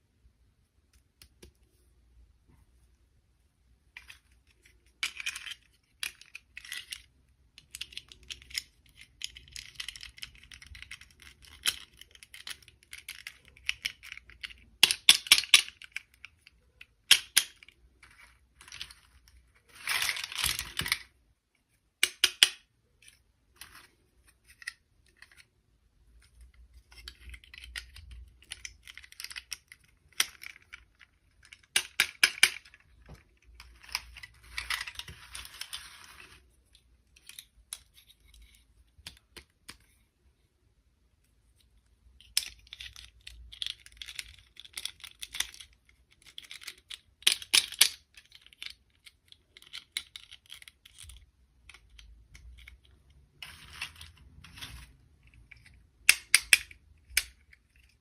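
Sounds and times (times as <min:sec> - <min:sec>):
toys clicking and tapping: 0:42.2 - 0:58.0.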